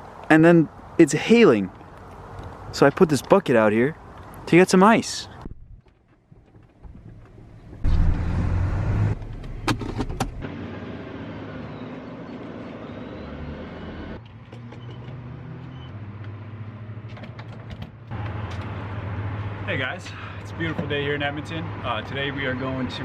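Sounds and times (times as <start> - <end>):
car engine running: 7.8 - 10.5.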